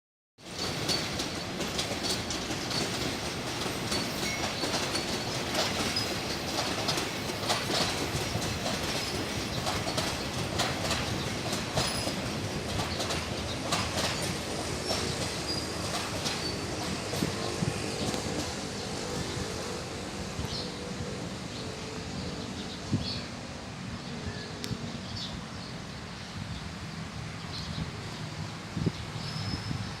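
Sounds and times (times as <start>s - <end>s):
train wheels clicking over rail joints: 0.4s - 23.2s.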